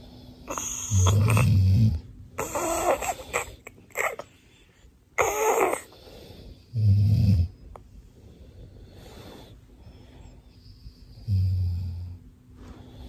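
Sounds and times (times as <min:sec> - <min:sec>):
man snoring: 0:00.0 - 0:03.6, 0:05.2 - 0:07.6, 0:11.2 - 0:12.2
baby imitating snores: 0:00.4 - 0:04.3, 0:05.2 - 0:06.0.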